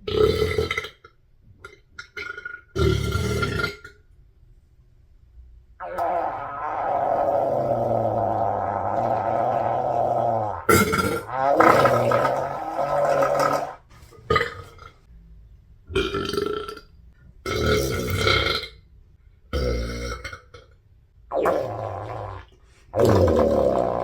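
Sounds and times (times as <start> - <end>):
woman burping: 5.8 - 13.8.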